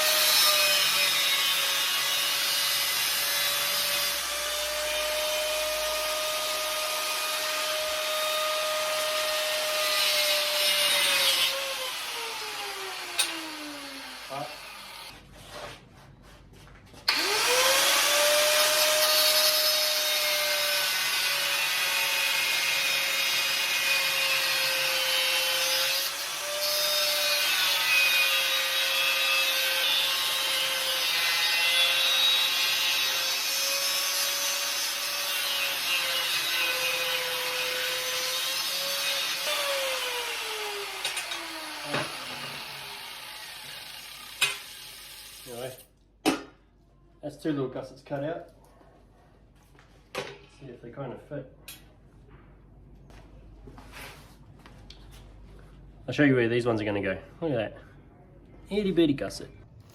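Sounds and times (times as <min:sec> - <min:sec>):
angle grinder cutting steel: 0:00.0 - 0:15.1, 0:17.1 - 0:45.8.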